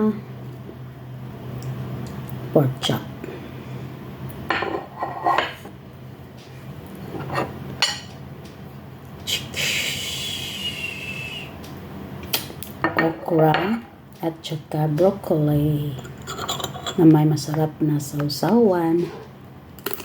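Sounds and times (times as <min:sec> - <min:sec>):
low steady hum: 0:00.0 - 0:20.0
cutlery clinking on a plate: 0:07.2 - 0:08.2.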